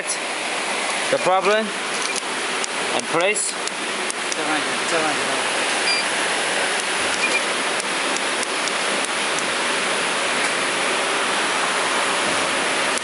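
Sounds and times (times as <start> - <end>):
electronic beep: 5.8 - 6.1, 7.2 - 7.5.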